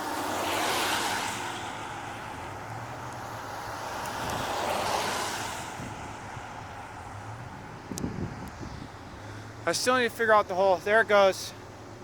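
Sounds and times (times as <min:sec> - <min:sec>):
wind rushing across microphone: 0:03.2 - 0:09.3.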